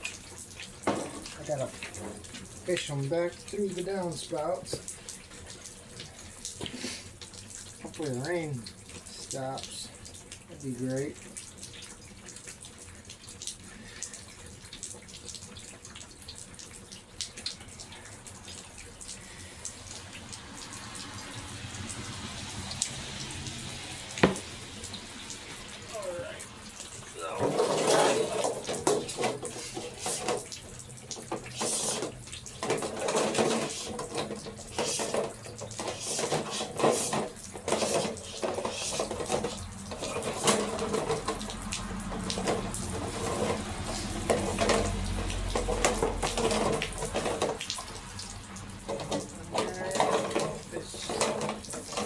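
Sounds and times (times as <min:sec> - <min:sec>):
rainwater running and splashing: 0:00.0 - 0:52.0
cables knocking in downspout: 0:24.2 - 0:25.9, 0:26.6 - 0:52.0.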